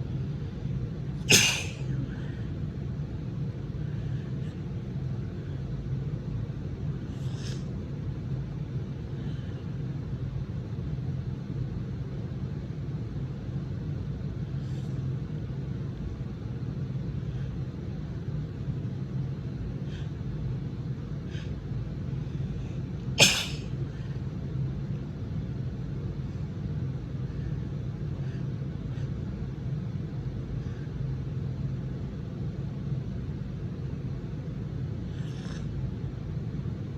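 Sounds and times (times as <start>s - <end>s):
steady low rumble: 0.0s - 36.9s
woman sneezing: 1.3s - 2.0s, 23.2s - 23.8s.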